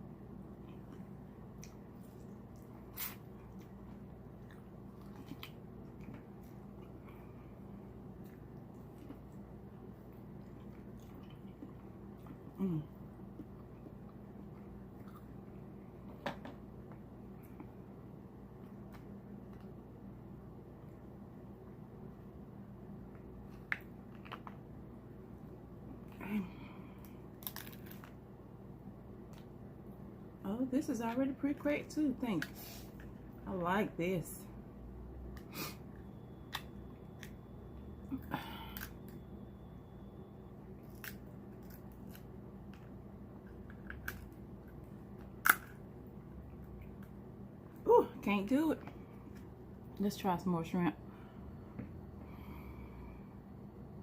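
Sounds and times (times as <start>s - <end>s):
chewing seafood: 8.1s - 12.6s, 13.3s - 15.6s
crab shell cracking: 27.4s - 28.2s, 45.4s - 45.8s.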